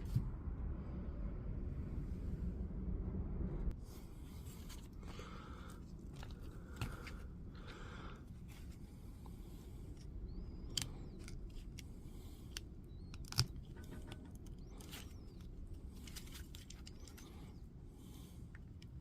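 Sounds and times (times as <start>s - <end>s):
low background rumble: 0.0s - 19.0s
light clicks of small parts: 8.4s - 19.0s.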